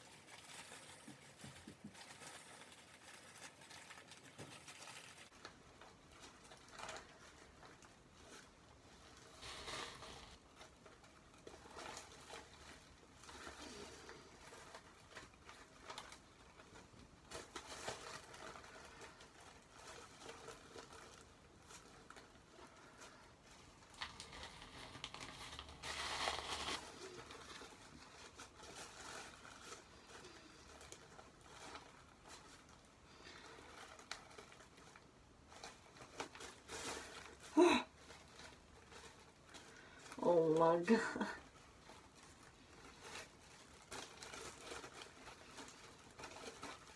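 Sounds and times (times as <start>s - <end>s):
plastic cap rustling and crinkling: 0.0s - 46.9s.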